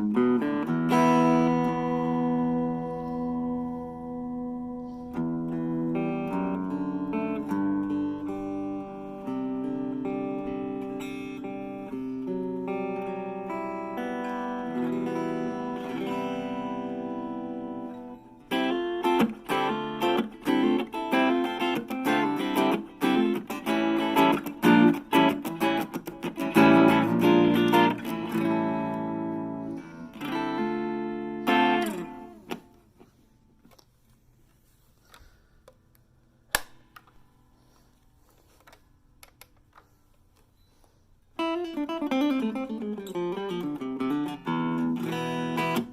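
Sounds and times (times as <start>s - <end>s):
electric guitar playing: 0.0s - 33.8s, 41.4s - 45.9s
click: 35.1s - 37.2s, 38.6s - 40.5s.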